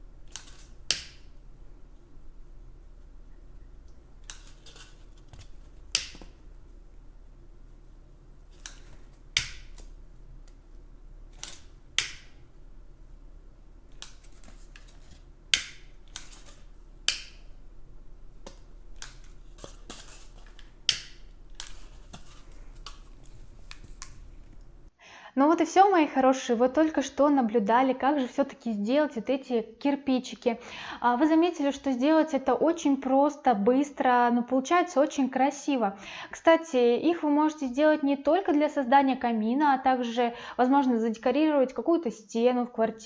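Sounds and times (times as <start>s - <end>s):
hand tools clicking on foam: 0.2s - 1.4s, 3.8s - 6.6s, 8.5s - 10.6s, 11.3s - 12.4s, 13.9s - 17.6s, 18.4s - 24.8s.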